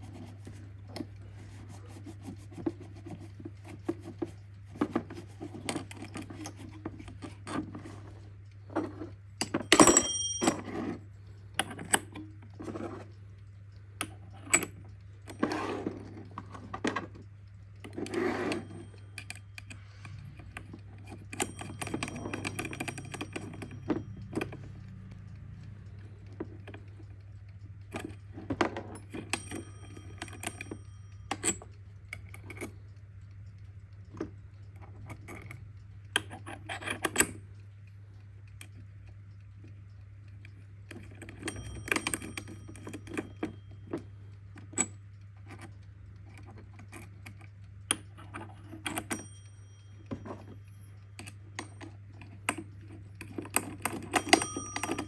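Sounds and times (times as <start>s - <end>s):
faint ringing metal tones: 9.4s - 11.0s, 48.4s - 51.9s, 53.8s - 55.0s.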